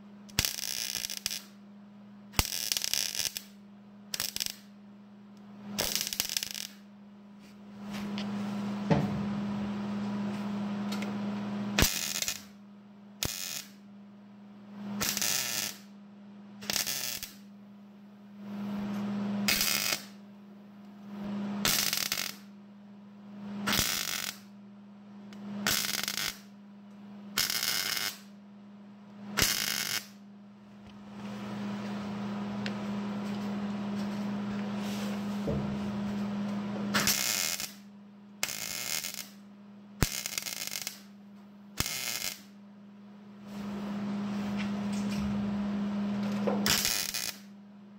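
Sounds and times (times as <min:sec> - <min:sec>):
steady low hum: 0:00.0 - 0:47.9
crackling weld arc: 0:00.3 - 0:01.6, 0:02.3 - 0:04.7, 0:05.8 - 0:06.9, 0:11.7 - 0:12.6, 0:13.2 - 0:13.8, 0:14.9 - 0:16.0, 0:16.6 - 0:17.5, 0:19.4 - 0:20.2, 0:21.6 - 0:22.5, 0:23.6 - 0:24.5, 0:25.6 - 0:26.5, 0:27.3 - 0:28.4, 0:29.4 - 0:30.2, 0:36.9 - 0:41.2, 0:41.8 - 0:42.6, 0:46.2 - 0:47.5.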